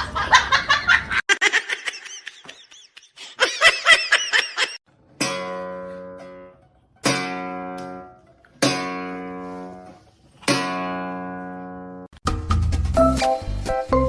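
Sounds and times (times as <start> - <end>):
guitar chords strummed: 5.2 - 9.8.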